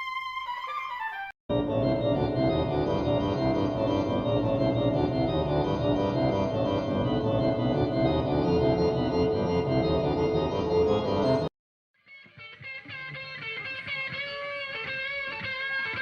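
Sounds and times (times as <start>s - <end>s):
high tone sliding down: 1.5s - 11.5s
organ playing chords: 1.5s - 11.5s.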